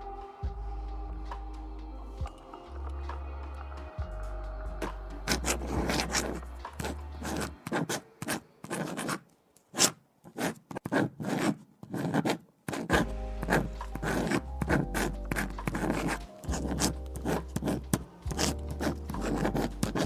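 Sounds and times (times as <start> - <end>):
lo-fi music: 0.0 - 8.1, 12.9 - 20.0
pen scratching on paper: 5.2 - 20.0.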